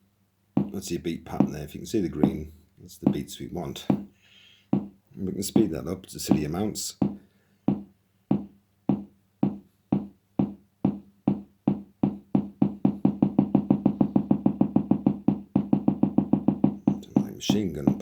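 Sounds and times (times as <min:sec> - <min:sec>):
electronic kick drum thumps: 0:04.7 - 0:18.0.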